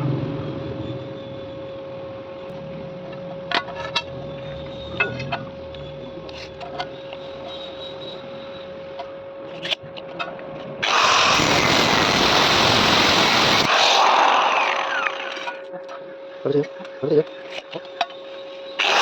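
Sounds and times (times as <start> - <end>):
loud metalworking machine: 10.8 - 15.6, 18.8 - 19.0.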